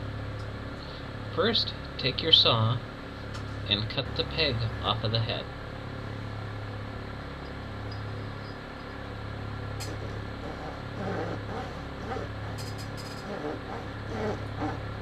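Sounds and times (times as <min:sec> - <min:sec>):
steady low hum: 0:00.0 - 0:15.0
hand saw rasping through plastic: 0:09.9 - 0:14.9.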